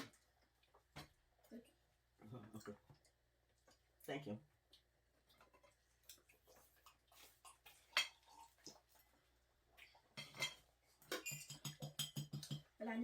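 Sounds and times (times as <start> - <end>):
cutlery clinking on plates: 10.2 - 12.7.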